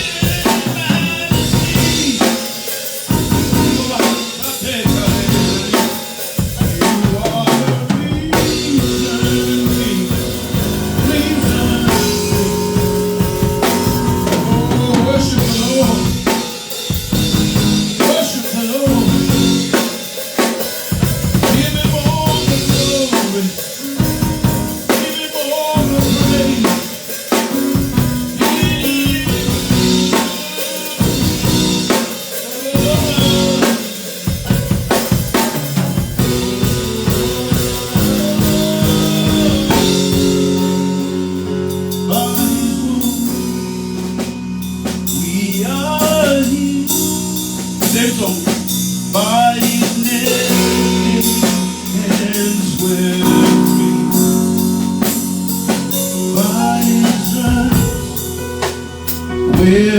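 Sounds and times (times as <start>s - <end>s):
band music: 0.0s - 59.9s
drum kit beat: 0.0s - 59.9s.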